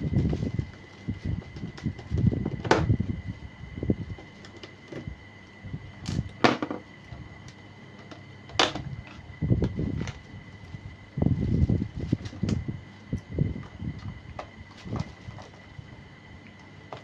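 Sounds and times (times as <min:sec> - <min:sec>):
rustling handling noise: 0:00.0 - 0:17.0.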